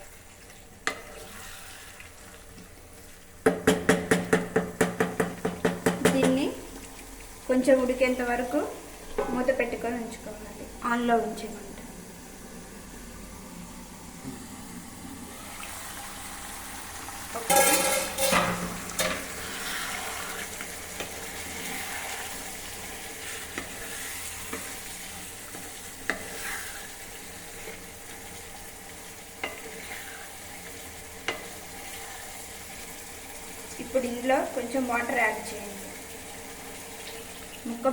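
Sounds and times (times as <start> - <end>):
chicken sizzling in a pan: 0.0 - 37.9
metal clatter with ringing tone: 17.4 - 19.2.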